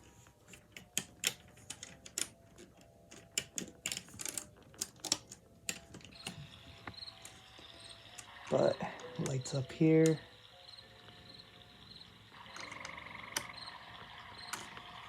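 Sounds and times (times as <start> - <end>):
hard plastic toy clicking: 0.5 - 6.4.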